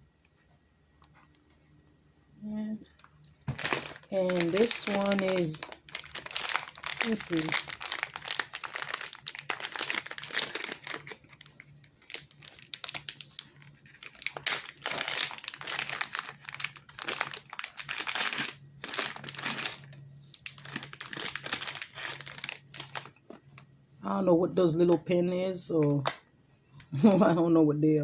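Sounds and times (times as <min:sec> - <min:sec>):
faint low hum: 0:00.0 - 0:28.0
plastic packaging crinkling: 0:02.8 - 0:23.6.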